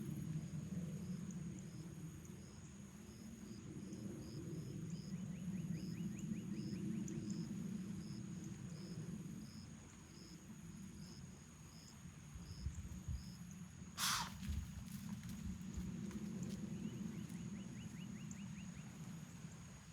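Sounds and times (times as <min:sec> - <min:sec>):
insects chirping: 0:01.0 - 0:19.9
deer snorting: 0:14.0 - 0:14.4.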